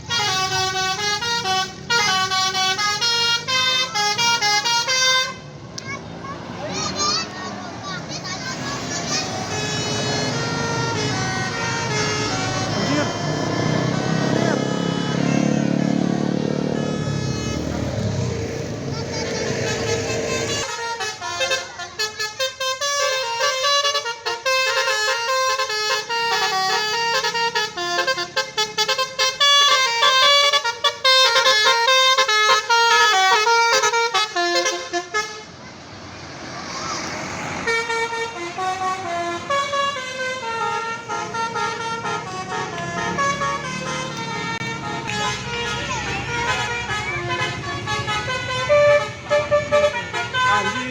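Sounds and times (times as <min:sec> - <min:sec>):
bus engine rumbling: 0:00.0 - 0:50.9
musical air horn melody: 0:09.5 - 0:18.1, 0:18.9 - 0:35.5, 0:37.6 - 0:50.9.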